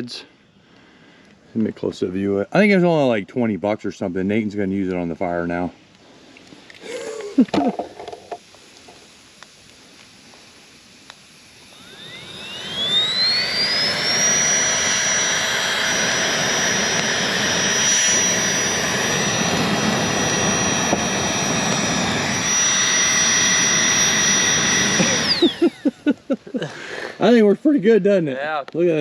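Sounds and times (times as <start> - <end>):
electric blower whining: 6.4 - 27.4
rushing air: 11.5 - 25.8.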